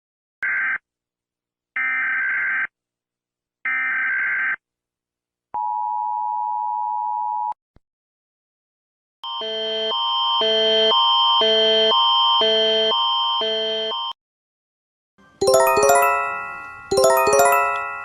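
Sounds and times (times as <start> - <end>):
two-tone alert signal: 15.4 - 18.0.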